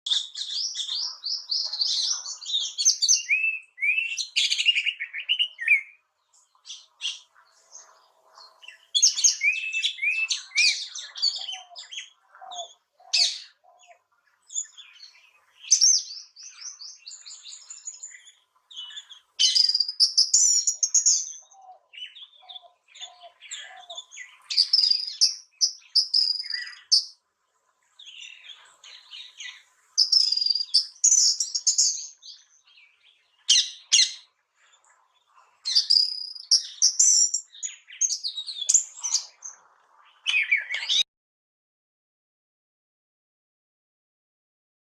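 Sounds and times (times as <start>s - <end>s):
bird chirping and whistling: 2.8s - 5.9s, 35.7s - 37.4s.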